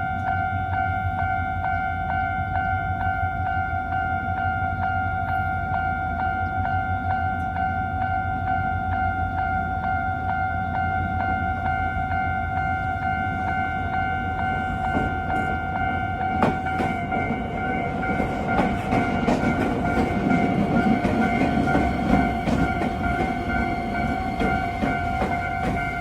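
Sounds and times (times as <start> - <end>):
level-crossing warning bell: 0.0 - 26.0
train wheels clacking over rail joints: 13.2 - 26.0.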